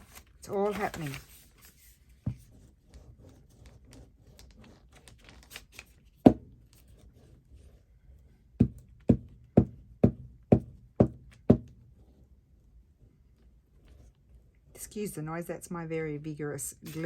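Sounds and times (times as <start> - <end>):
paper rustling: 0.0 - 7.1, 16.8 - 17.0.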